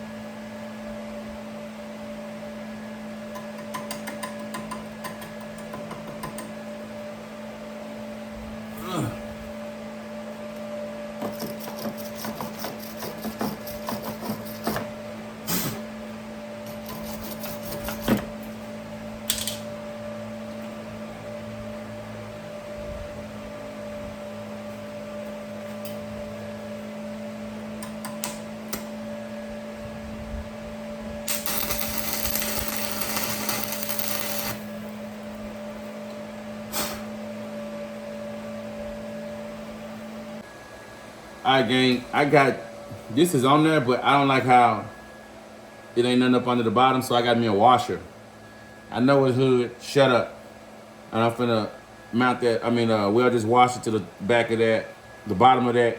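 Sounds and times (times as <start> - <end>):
steady hum: 20.9 - 47.5
welding arc crackling: 31.3 - 35.0.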